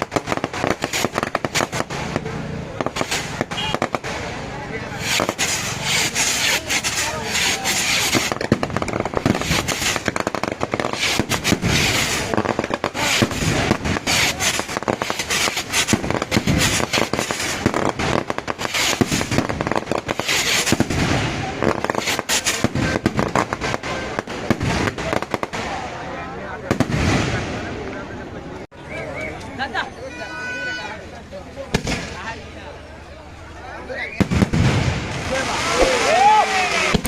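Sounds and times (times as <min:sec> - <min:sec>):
fireworks hissing: 0:00.0 - 0:25.9, 0:33.8 - 0:37.0
fireworks crackling bangs: 0:00.0 - 0:29.8, 0:30.5 - 0:37.0.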